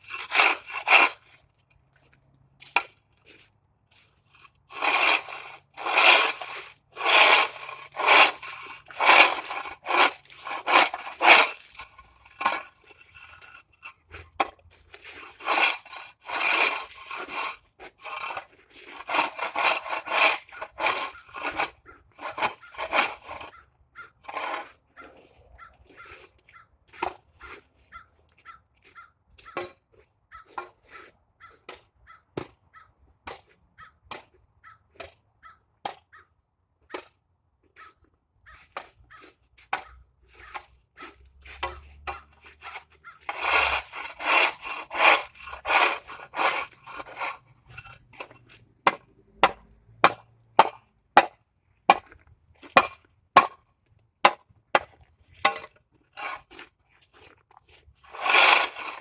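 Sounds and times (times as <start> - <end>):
broken ice scraping: 0.0 - 31.7, 37.8 - 59.0
hand tool striking ice: 4.7 - 23.5, 38.7 - 53.6, 54.3 - 59.0.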